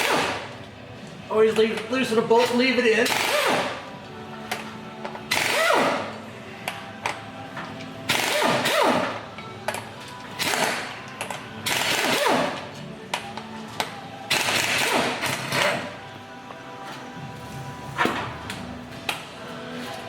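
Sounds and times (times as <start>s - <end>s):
background music: 0.0s - 20.0s
pneumatic wrench running bolts: 3.0s - 3.7s, 5.3s - 6.0s, 8.1s - 9.2s, 10.4s - 12.6s, 14.3s - 15.9s.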